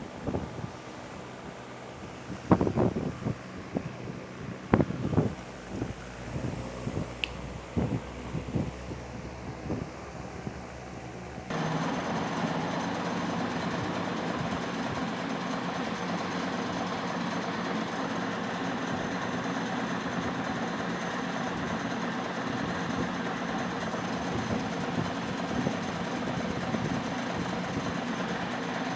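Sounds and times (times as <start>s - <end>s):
metalworking lathe running: 11.5s - 28.9s.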